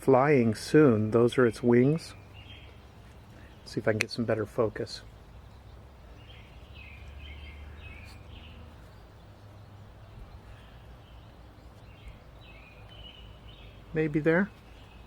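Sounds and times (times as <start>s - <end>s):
faint bird chirps: 5.3s - 15.0s.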